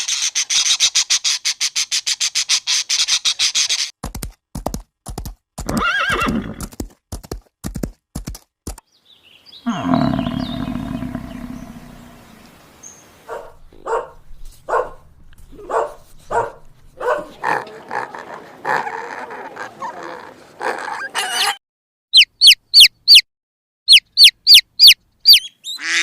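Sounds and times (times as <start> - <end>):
animal roaring: 9.7 - 12.3.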